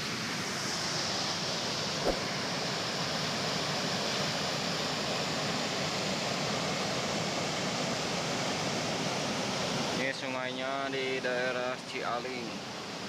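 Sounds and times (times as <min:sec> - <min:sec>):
brief click: 0:02.0 - 0:02.3.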